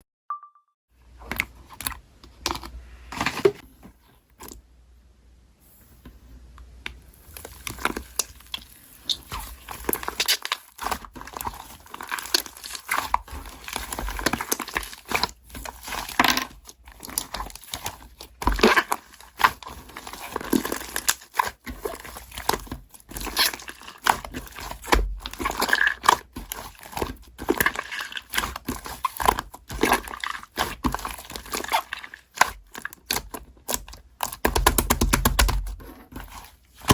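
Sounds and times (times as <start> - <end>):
slime crackling and popping: 7.4 - 35.6.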